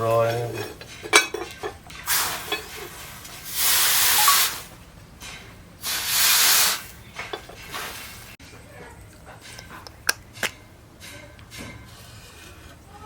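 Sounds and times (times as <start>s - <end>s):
hissing bursts: 2.1s - 4.8s, 5.8s - 7.0s.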